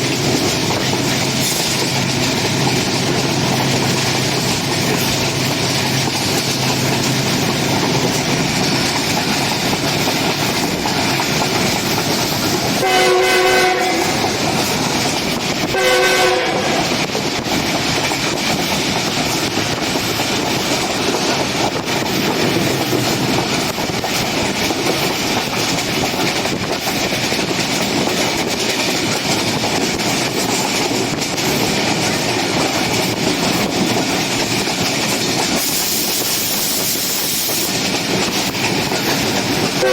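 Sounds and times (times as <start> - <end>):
train wheels clattering on rails: 0.0 - 39.9
locomotive horn: 12.8 - 14.4, 15.7 - 16.9.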